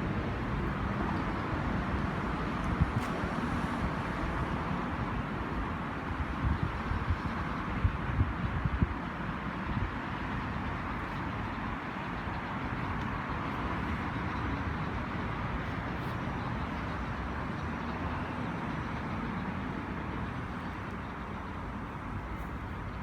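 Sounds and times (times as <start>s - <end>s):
outdoor background rush: 0.0s - 23.0s.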